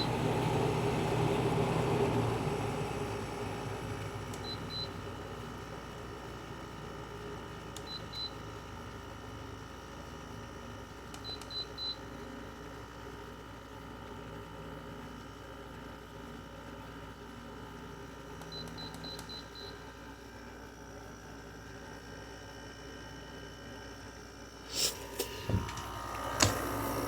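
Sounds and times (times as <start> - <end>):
air conditioner humming: 0.0 - 27.0.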